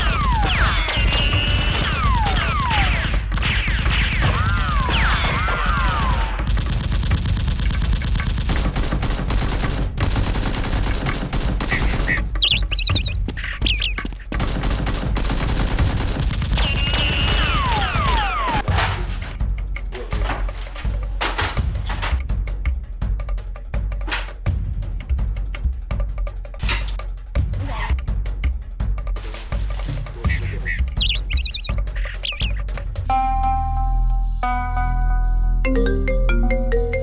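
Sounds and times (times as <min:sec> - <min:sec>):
automatic gunfire: 0:00.0 - 0:12.3, 0:14.4 - 0:19.4.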